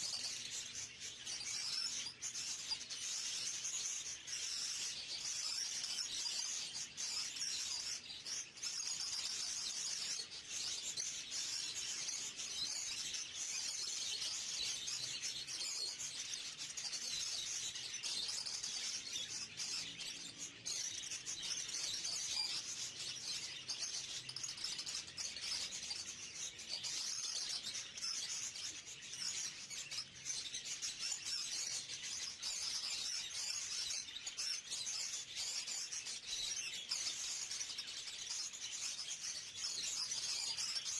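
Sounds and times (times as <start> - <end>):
budgerigars chattering: 0.0 - 40.9.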